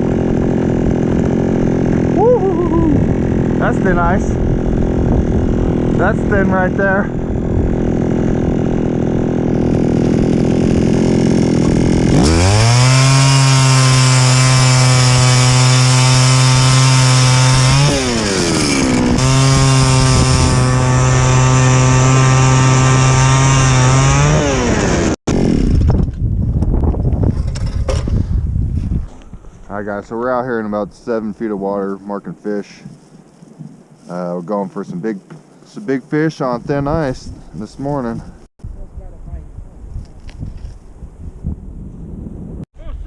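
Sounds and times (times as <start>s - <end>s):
ice auger engine revving: 0.0s - 25.9s.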